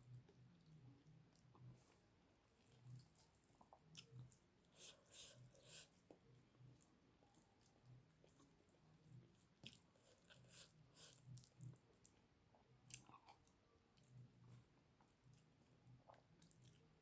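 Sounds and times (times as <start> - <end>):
chewing soft food: 0.0 - 17.0.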